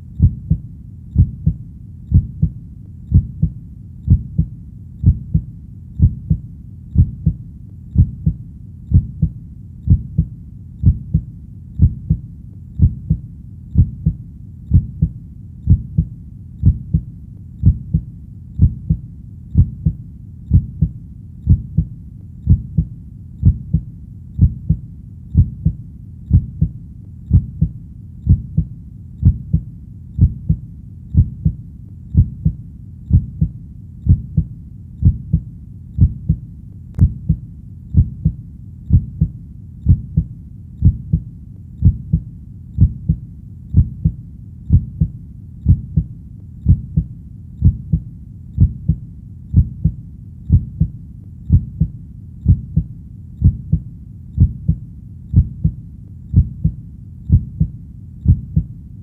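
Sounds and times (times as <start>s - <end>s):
heartbeat thumps: 0.0s - 36.4s, 37.0s - 58.7s.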